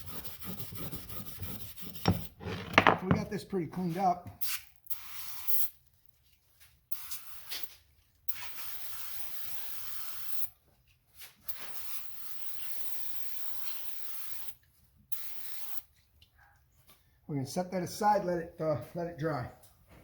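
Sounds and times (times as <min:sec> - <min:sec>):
aerosol can spraying: 0:08.3 - 0:10.5, 0:11.5 - 0:15.8.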